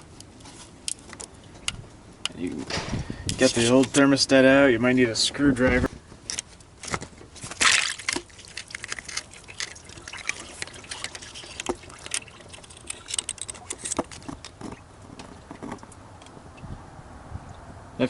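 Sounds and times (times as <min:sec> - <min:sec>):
clicks and scrapes: 0:06.3 - 0:16.0
coolant trickling and dripping: 0:07.4 - 0:16.7.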